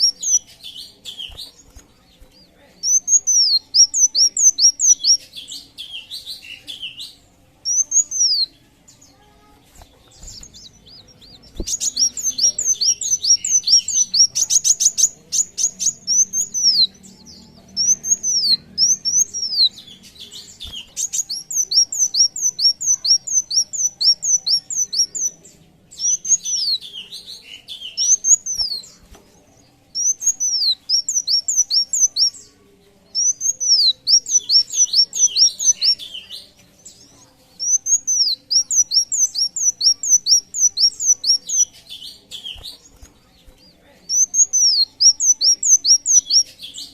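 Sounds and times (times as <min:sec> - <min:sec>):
bird singing high chirps: 0:00.0 - 0:46.9
fast rattling bird trill: 0:09.6 - 0:25.3.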